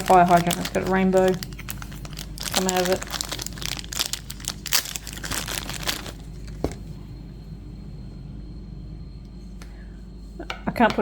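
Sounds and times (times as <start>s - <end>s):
plastic wrapping crinkling: 0.0s - 6.8s.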